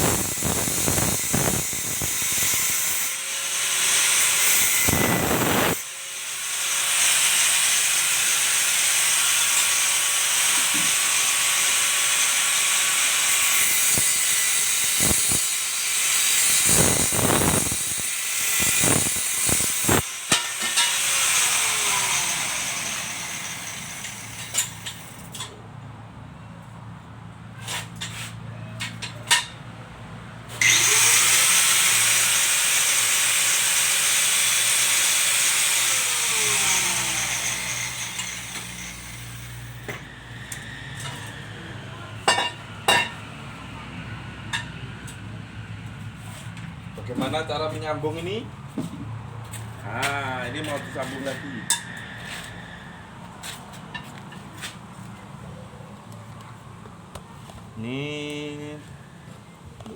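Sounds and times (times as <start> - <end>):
angle grinder on steel: 0.0 - 25.6, 30.5 - 43.8, 49.5 - 54.7.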